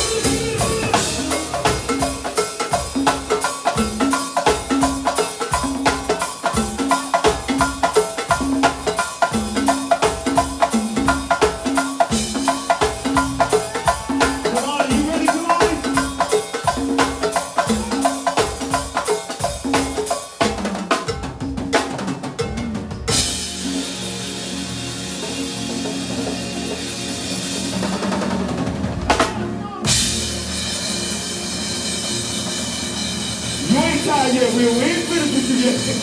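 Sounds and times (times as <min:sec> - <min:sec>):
repeating bass line: 0:00.0 - 0:02.2
drum kit and percussion: 0:00.0 - 0:36.0
live band music: 0:00.0 - 0:36.0.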